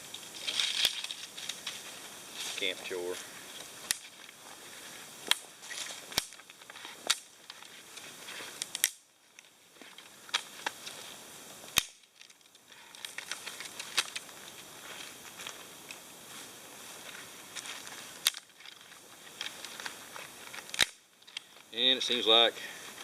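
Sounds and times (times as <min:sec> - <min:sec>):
brittle twigs crackling: 0:00.0 - 0:11.1, 0:11.7 - 0:16.2, 0:16.8 - 0:23.0
dry sticks snapping: 0:03.6 - 0:04.4, 0:05.2 - 0:08.0, 0:08.6 - 0:11.0, 0:11.7 - 0:14.4, 0:17.6 - 0:21.7.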